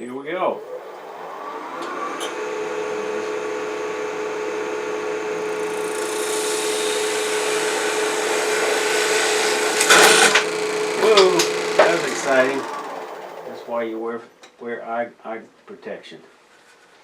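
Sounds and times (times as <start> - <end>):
lathe humming: 0.4 - 14.0
tool scraping plastic: 9.4 - 12.5.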